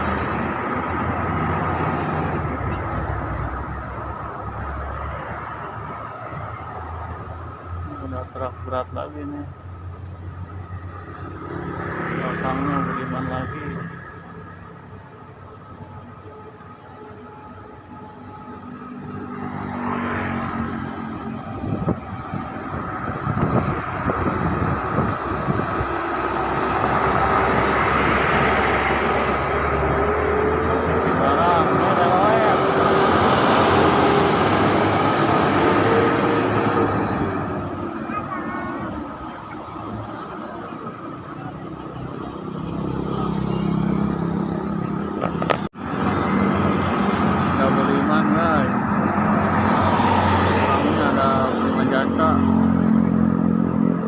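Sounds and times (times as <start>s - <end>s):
road noise: 0.0s - 54.0s
heavy truck engine labouring: 20.5s - 54.0s.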